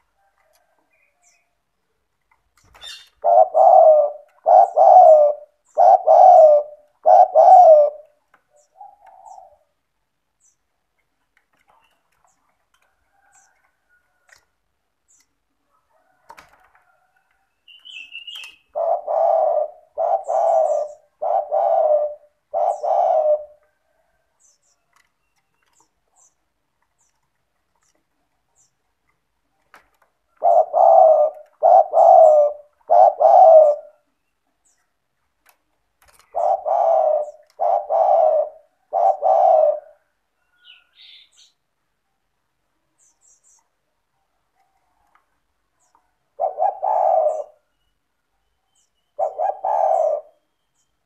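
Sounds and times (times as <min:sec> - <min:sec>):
dove cooing: 0:03.0 - 0:09.8, 0:18.0 - 0:24.2, 0:30.3 - 0:34.2, 0:36.1 - 0:41.0, 0:46.1 - 0:47.8, 0:49.1 - 0:50.5.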